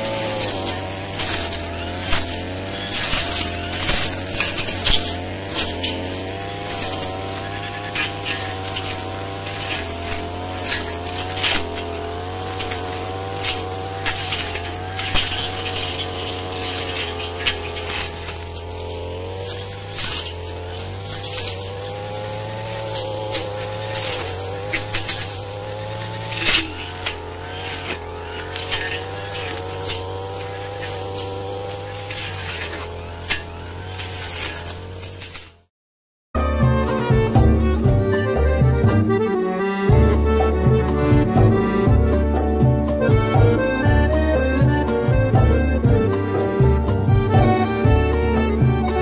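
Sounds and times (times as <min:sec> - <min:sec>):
brush cutter engine: 0:00.0 - 0:35.7, 0:36.4 - 0:49.0
brush snapping: 0:00.0 - 0:35.7.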